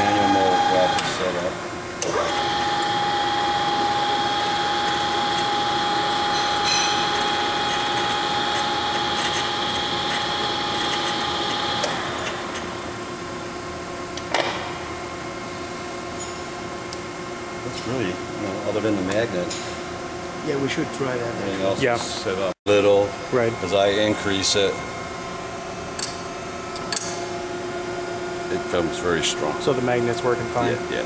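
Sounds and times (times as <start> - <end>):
surface grinder whining: 0.0 - 12.5
machine hum: 0.0 - 31.0.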